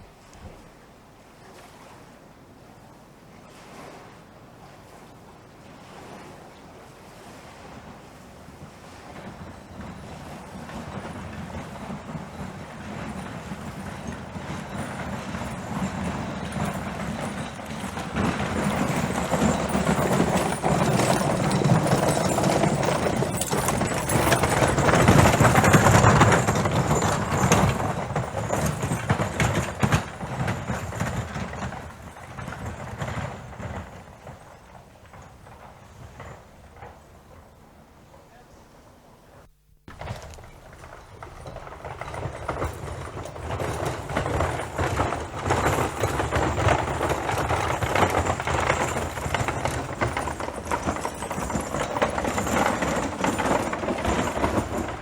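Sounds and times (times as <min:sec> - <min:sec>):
horse hoofbeats passing: 0:05.8 - 0:55.0.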